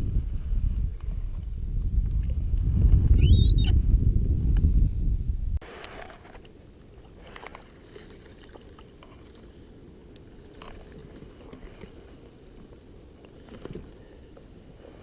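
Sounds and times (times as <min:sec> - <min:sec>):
wind rumbling on microphone: 0:00.0 - 0:05.7.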